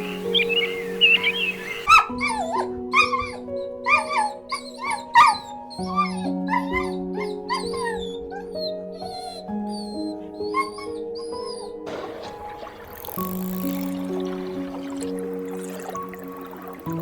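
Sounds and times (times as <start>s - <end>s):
soft background music: 0.0s - 17.0s
high-pitched animal yips: 1.2s - 12.7s.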